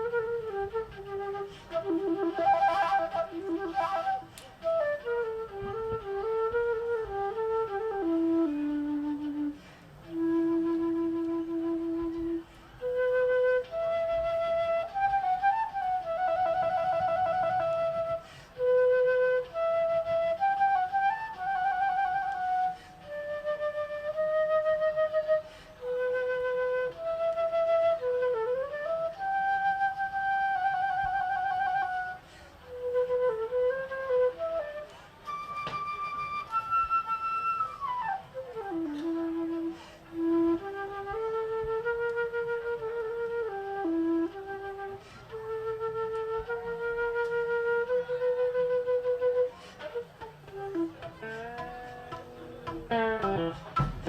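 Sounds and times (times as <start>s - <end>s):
solo flute melody: 0.0s - 54.0s.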